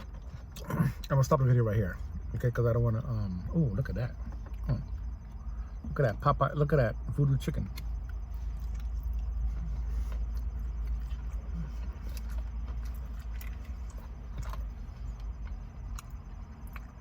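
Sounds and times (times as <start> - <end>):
person chewing crispy food: 7.7 - 17.0.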